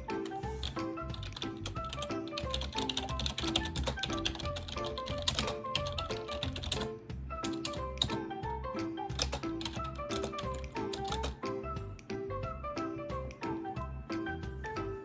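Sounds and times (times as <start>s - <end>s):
typing on computer keyboard: 0.2s - 8.2s, 9.2s - 11.4s.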